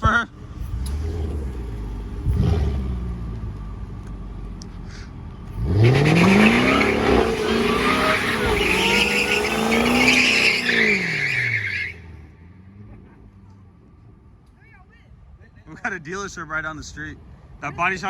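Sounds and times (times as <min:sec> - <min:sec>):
car engine revving: 0:00.3 - 0:13.4
tyres squealing: 0:05.7 - 0:12.0.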